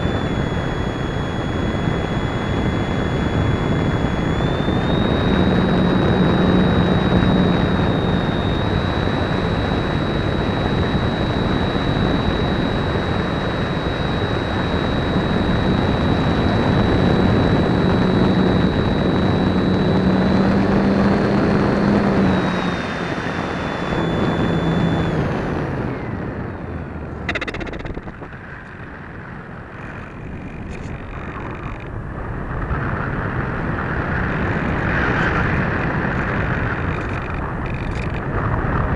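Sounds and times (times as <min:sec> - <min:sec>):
electric motor and propeller whine: 0:00.0 - 0:38.9.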